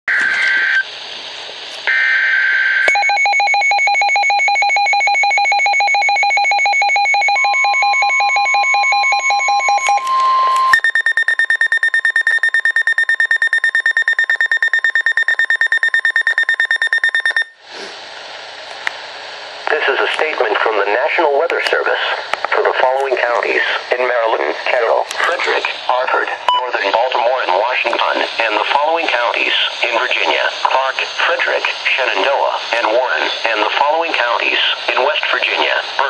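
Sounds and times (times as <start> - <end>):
higher-pitched pulsing radio alarm: 1.9 - 17.6
rapidly pulsing alarm beep: 2.0 - 17.6.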